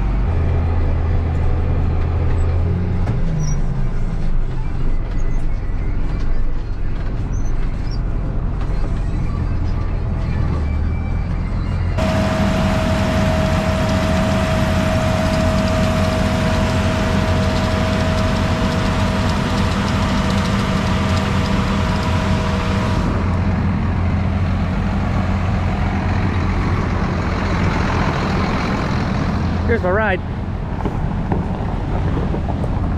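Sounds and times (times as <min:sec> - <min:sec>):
farm machinery engine running: 0:11.4 - 0:32.9
rushing noise with whine: 0:12.0 - 0:32.9.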